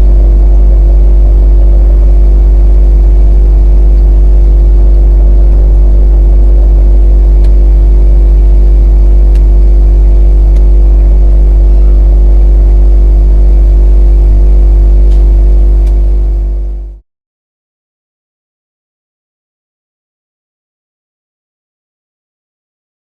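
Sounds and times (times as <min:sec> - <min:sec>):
drone motors humming: 0:00.0 - 0:17.0.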